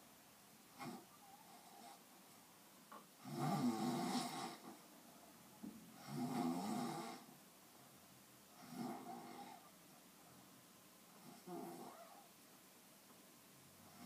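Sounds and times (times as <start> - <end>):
person snoring: 3.2 - 4.8, 6.0 - 7.3.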